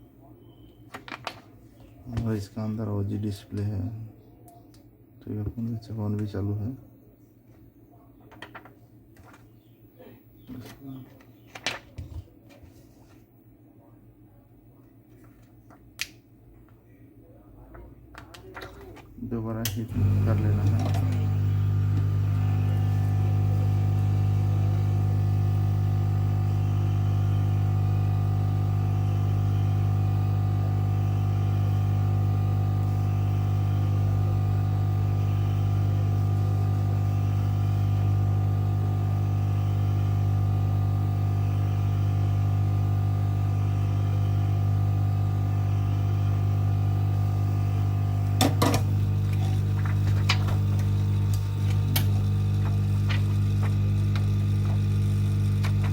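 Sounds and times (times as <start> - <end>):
heat gun humming: 19.6 - 55.9.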